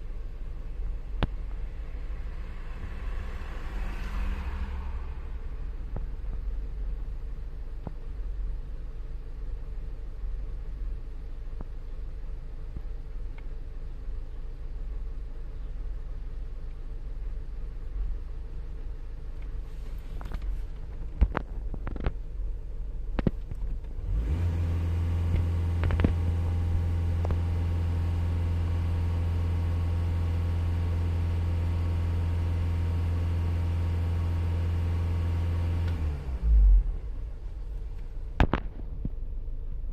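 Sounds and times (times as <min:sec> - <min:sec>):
thump: 0:38.4 - 0:38.9.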